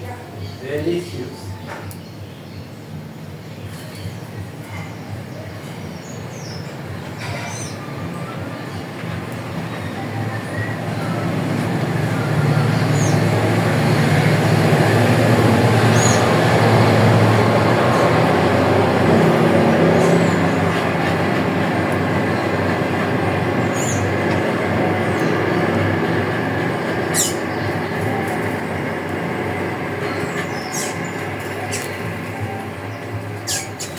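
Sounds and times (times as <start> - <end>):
loud steady rumbling: 6.7 - 33.9
high bird chirps: 26.7 - 28.3, 30.0 - 33.9.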